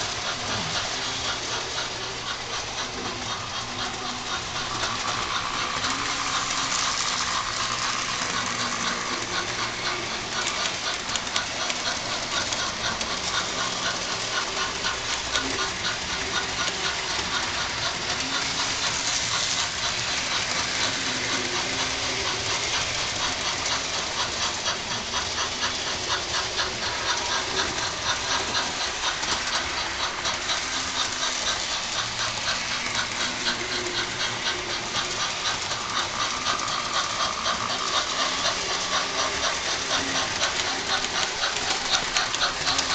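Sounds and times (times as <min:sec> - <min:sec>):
steam chuffing through small speaker: 0:00.0 - 0:42.9.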